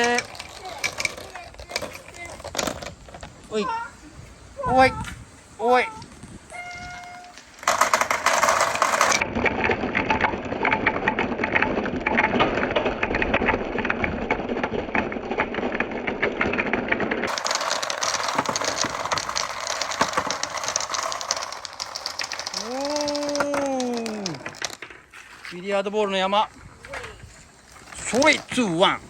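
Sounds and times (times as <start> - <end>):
marbles rattling down a track: 0.0 - 3.7, 6.7 - 25.2.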